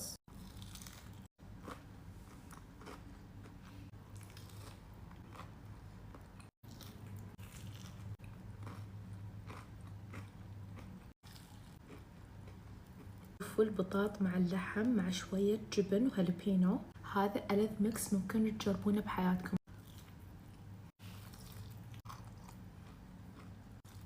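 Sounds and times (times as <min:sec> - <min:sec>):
low steady hum: 0:00.0 - 0:24.0
person chewing crunchy food: 0:00.3 - 0:13.4, 0:19.7 - 0:24.0.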